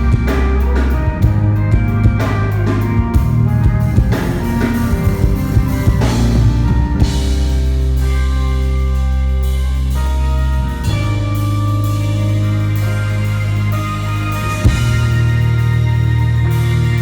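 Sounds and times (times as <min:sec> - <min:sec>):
drum kit hits: 0:00.0 - 0:08.2
held rock guitar chords: 0:00.0 - 0:17.0
sustained bass note: 0:00.0 - 0:17.0.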